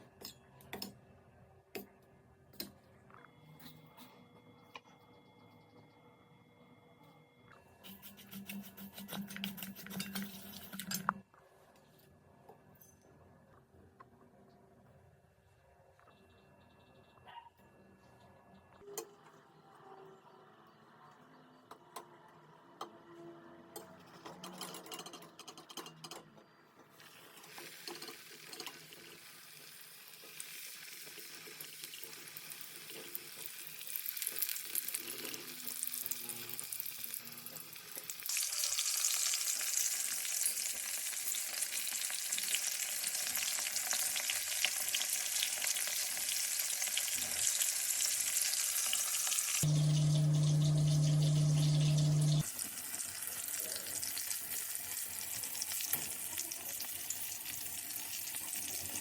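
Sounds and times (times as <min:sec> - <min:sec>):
prawns sizzling in hot oil: 0:27.0 - 0:59.0
loud low hum: 0:49.7 - 0:52.4.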